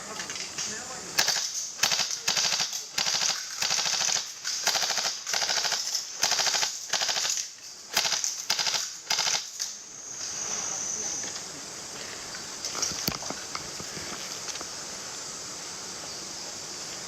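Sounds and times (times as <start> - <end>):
airsoft gun firing bursts: 1.2 - 9.6.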